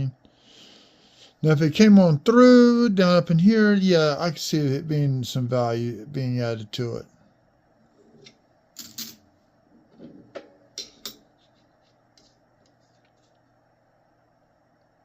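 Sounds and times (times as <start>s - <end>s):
coins clicking on hard surface: 8.8s - 9.2s.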